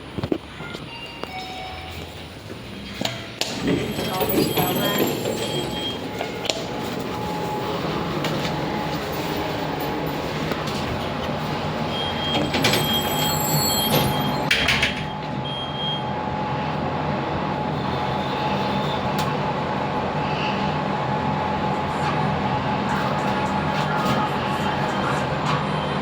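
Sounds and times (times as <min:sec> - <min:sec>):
mechanical rumble and hum: 0:05.4 - 0:26.0.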